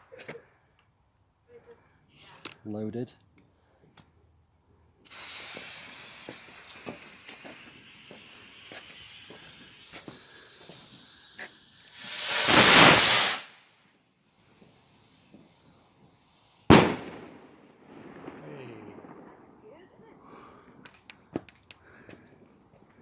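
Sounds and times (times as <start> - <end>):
firework fuse hissing and crackling: 5.0 - 13.6, 14.5 - 23.0
rocket launching whoosh: 5.1 - 13.5, 16.7 - 19.2.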